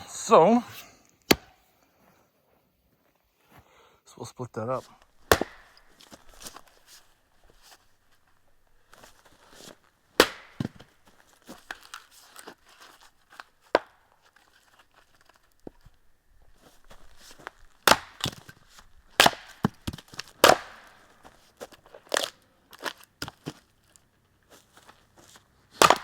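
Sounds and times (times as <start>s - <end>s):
axe striking firewood: 1.2s - 1.6s, 5.0s - 6.8s, 9.5s - 14.2s, 16.9s - 23.7s, 25.7s - 26.0s.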